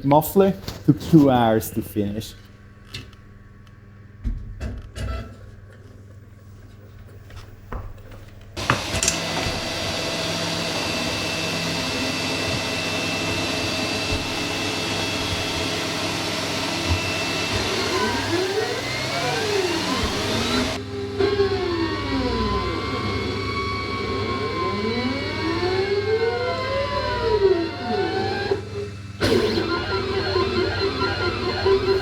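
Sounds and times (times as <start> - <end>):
cooling fans rushing: 0.0 - 32.0
stepper motors whining: 8.6 - 32.0.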